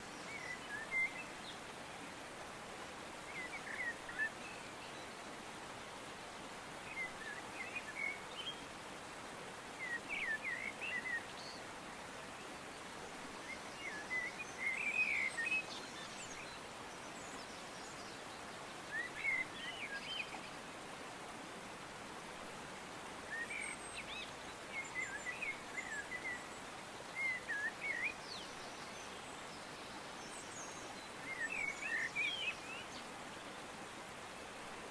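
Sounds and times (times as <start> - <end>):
faint background hiss: 0.0 - 34.9.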